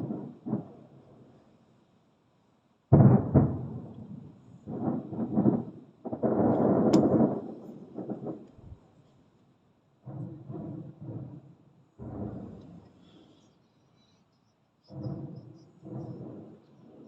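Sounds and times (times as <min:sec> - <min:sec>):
sharp firework crack: 0:00.0 - 0:01.0, 0:02.9 - 0:08.8, 0:14.9 - 0:17.0
fireworks booming: 0:00.0 - 0:01.5, 0:02.9 - 0:09.0, 0:10.0 - 0:13.5, 0:14.9 - 0:17.0.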